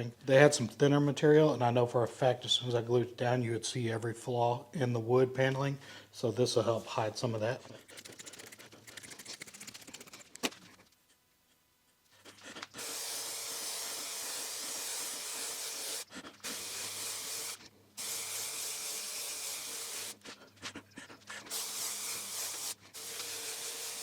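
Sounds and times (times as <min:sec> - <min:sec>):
aerosol can spraying: 0:12.7 - 0:20.2, 0:21.3 - 0:24.0.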